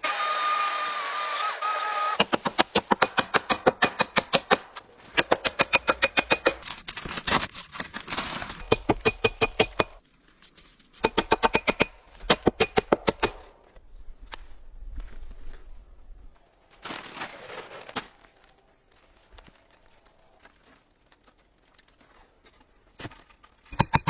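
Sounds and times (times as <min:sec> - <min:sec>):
rapid sharp metallic knocks: 0:02.2 - 0:06.7, 0:08.6 - 0:10.0, 0:11.0 - 0:13.5, 0:23.7 - 0:24.0.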